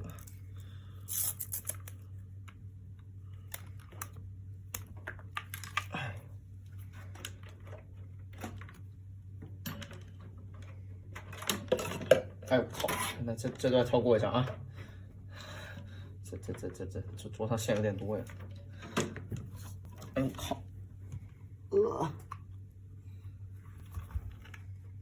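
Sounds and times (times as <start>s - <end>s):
low steady hum: 0.0s - 25.0s.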